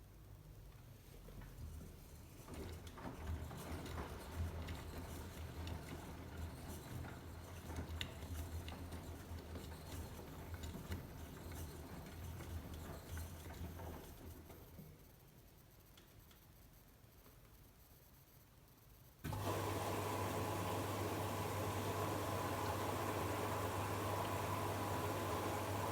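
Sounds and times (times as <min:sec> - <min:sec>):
washing machine motor hum: 0:01.6 - 0:14.8, 0:19.2 - 0:25.9.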